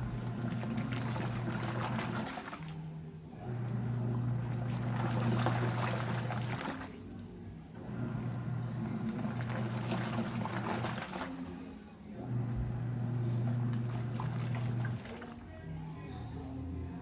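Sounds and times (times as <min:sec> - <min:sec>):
water sloshing: 0:00.0 - 0:03.0, 0:03.8 - 0:07.2, 0:08.8 - 0:15.6
washing machine motor humming: 0:00.0 - 0:15.8.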